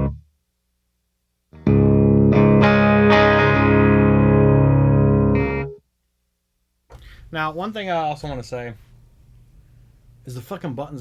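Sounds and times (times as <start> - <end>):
distorted electric guitar chords: 0.0 - 0.2, 1.6 - 5.8.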